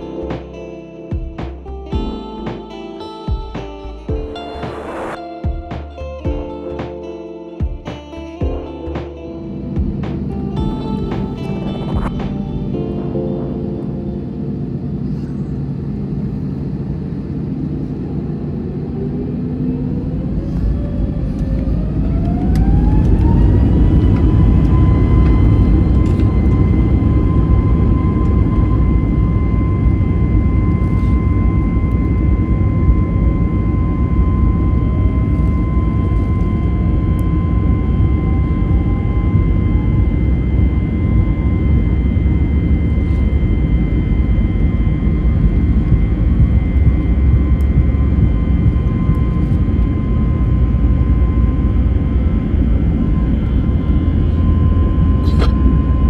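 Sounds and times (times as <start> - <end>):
jet engines whining: 4.3 - 5.2, 10.1 - 56.0
loud constant rumble: 8.0 - 56.0.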